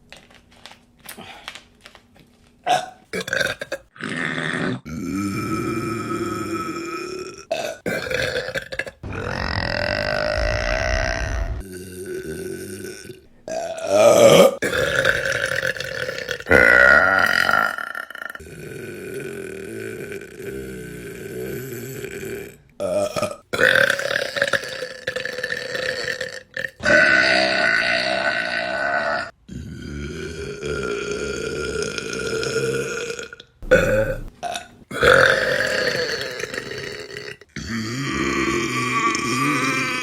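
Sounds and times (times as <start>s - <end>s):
women burping: 32.9s - 34.3s.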